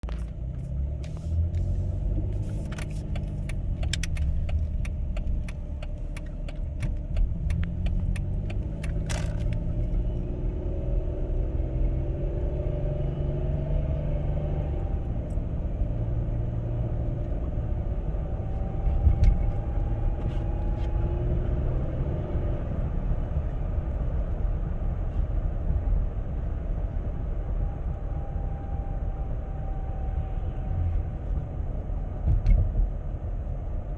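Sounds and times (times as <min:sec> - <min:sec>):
car engine running: 0:00.0 - 0:21.6
sharp clicks: 0:01.1 - 0:10.0.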